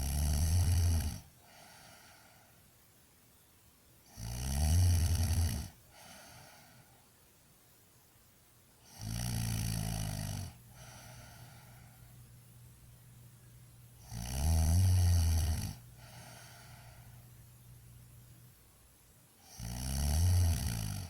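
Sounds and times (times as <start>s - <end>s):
loud low snoring: 0.0s - 1.3s, 4.1s - 6.2s, 8.9s - 11.4s, 14.0s - 16.7s, 19.4s - 21.0s
breathy exhale: 1.4s - 2.6s, 5.9s - 7.1s, 10.7s - 12.2s, 16.0s - 17.4s.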